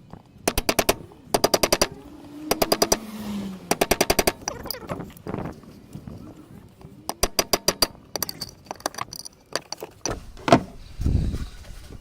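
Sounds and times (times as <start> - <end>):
hand tool ratcheting clicks: 0.1 - 3.1, 3.7 - 5.2, 6.7 - 10.2.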